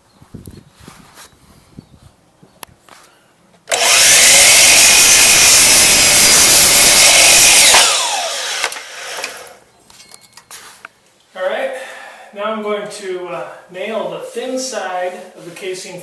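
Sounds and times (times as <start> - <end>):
power saw cutting wood: 3.7 - 9.6
saw motor winding down: 3.7 - 9.6.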